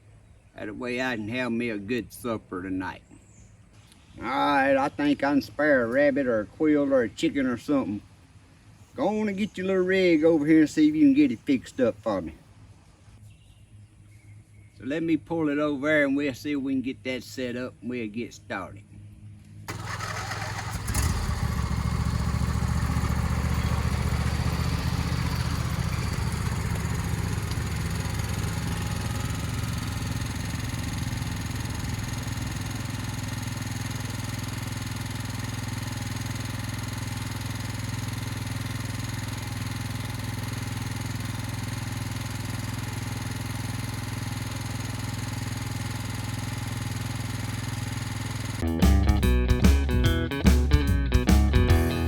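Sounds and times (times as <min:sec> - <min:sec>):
small engine humming: 0:19.7 - 0:48.6.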